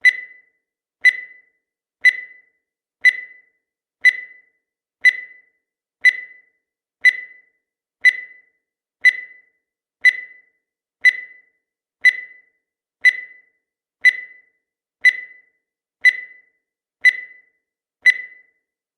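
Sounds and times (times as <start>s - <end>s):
short high beeps: 18.1s - 18.5s.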